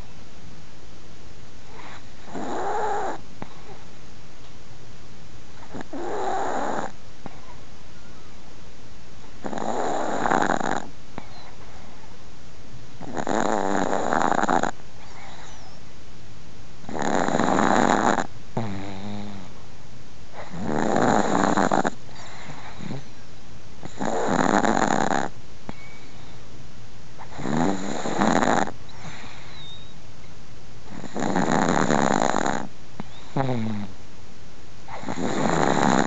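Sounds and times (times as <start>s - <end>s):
small dog snoring: 1.6s - 3.9s, 5.6s - 7.6s, 9.4s - 12.0s, 13.0s - 15.8s, 16.8s - 19.6s, 20.3s - 23.2s, 23.8s - 26.3s, 27.2s - 30.0s, 30.8s - 34.0s, 34.9s - 36.0s.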